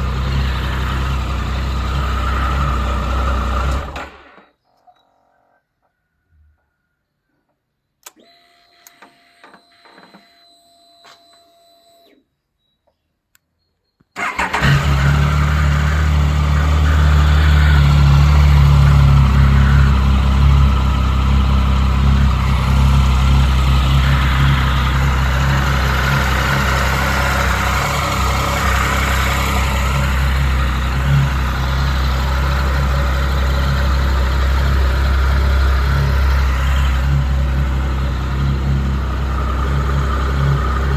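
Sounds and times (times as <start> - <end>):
motorcycle engine starting and idling: 0.0 - 5.3, 14.1 - 40.9
clicks: 7.4 - 14.2
faint whine: 17.0 - 40.9.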